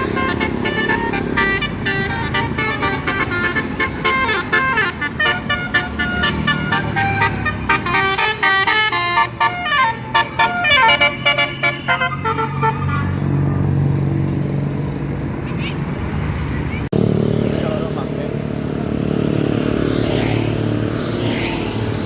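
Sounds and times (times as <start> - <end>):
multi-tone bus horn tune: 0.0 - 13.7
bus engine droning: 0.0 - 22.0.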